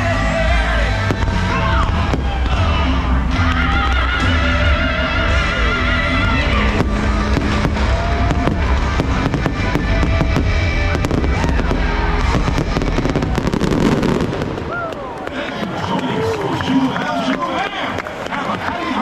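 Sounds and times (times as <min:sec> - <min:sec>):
loud music: 0:00.0 - 0:14.7
fireworks bursting: 0:00.4 - 0:15.8.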